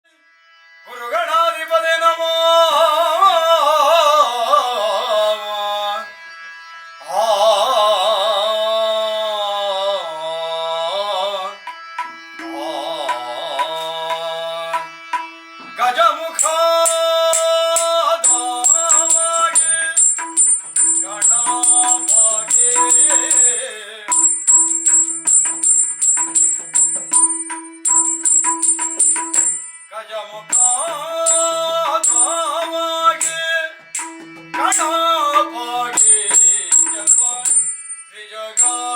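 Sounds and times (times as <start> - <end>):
solo voice singing with vibrato: 16.1 - 24.6
high ringing cymbal strikes: 16.4 - 33.4, 36.0 - 38.9
rapid drum strokes: 16.9 - 29.7.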